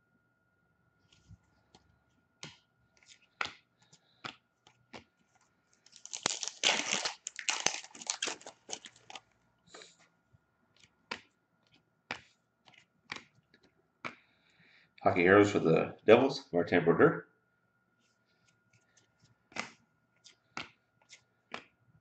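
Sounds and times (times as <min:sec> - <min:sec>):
cards rustling and clicking: 0:02.4 - 0:09.3, 0:18.8 - 0:21.7
foil pack tearing and crinkling: 0:05.8 - 0:09.2.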